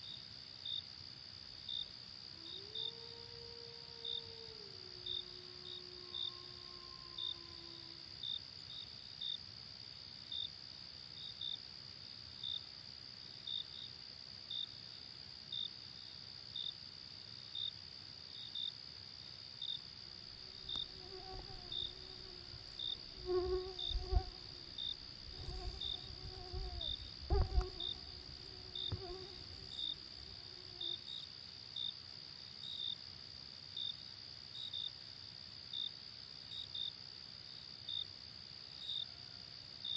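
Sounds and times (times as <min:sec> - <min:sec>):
cricket chirping: 0:00.0 - 0:39.9
high insect trill: 0:01.7 - 0:10.6, 0:17.5 - 0:33.1
low thuds: 0:23.0 - 0:29.3.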